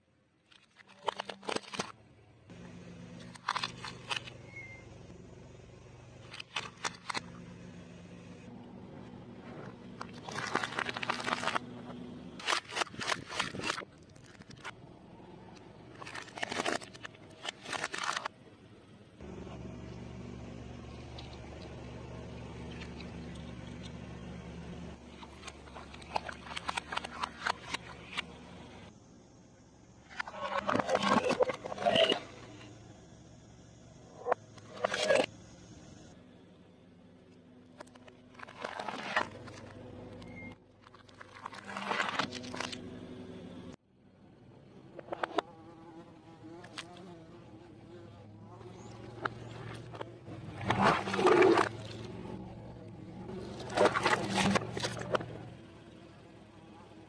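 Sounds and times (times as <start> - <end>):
steady low hum: 1.3 - 57.0
chewing crispy fried food: 9.4 - 11.6
crunching fried food: 9.4 - 11.7, 12.4 - 14.8, 15.9 - 18.3.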